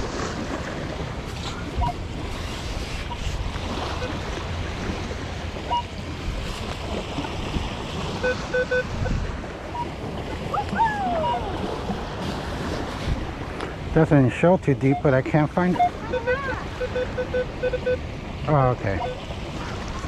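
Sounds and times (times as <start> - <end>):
wind buffeting microphone: 0.0 - 14.0
surf: 0.0 - 20.0
metal detector beeps: 1.4 - 4.2, 5.7 - 6.0, 8.2 - 8.9, 9.7 - 9.9, 14.8 - 18.0, 18.9 - 19.2.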